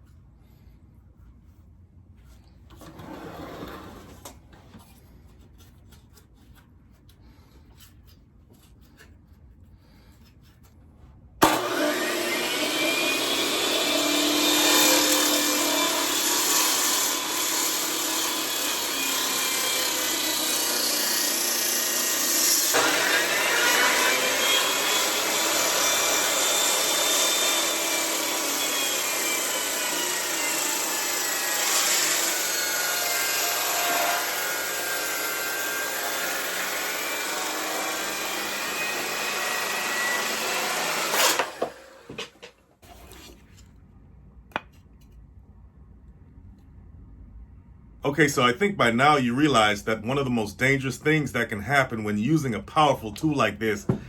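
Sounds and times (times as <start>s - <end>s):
circular saw cutting wood: 11.4s - 42.4s.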